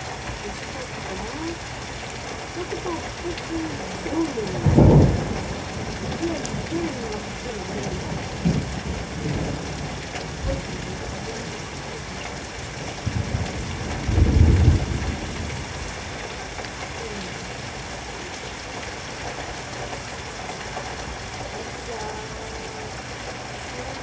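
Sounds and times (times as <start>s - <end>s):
low thunder rumble: 0.0s - 19.1s
heavy rain falling: 0.0s - 24.0s.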